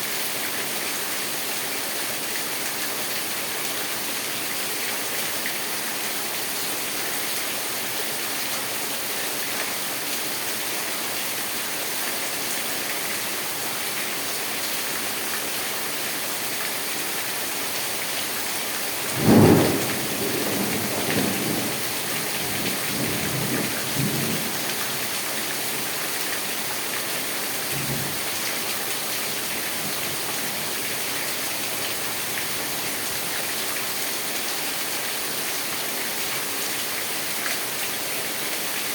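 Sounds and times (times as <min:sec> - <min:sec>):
steady rain: 0:00.0 - 0:38.9
thunder clap rumbling: 0:19.1 - 0:24.4.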